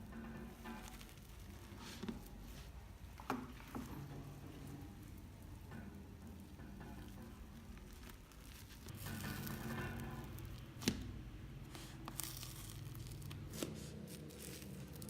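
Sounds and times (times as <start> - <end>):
slime squishing and crackling: 0.6 - 2.6, 7.0 - 15.0.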